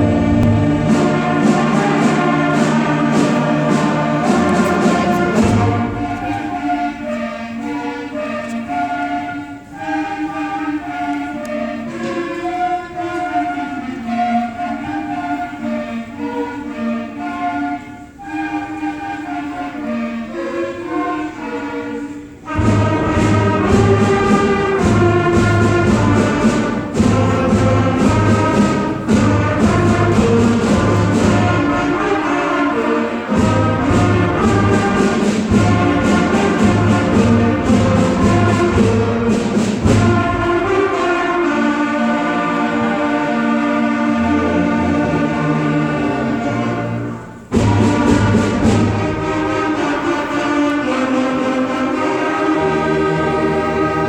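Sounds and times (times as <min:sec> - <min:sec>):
orchestral music with choir: 0:00.0 - 0:54.0.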